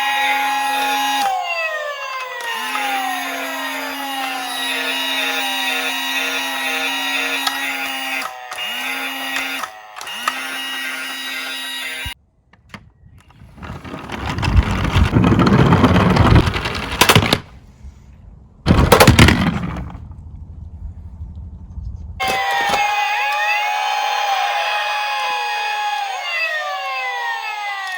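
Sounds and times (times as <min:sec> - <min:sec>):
electronic toy police siren wailing: 0:00.0 - 0:12.2, 0:22.2 - 0:27.9
loud rolling rumble: 0:13.4 - 0:22.2.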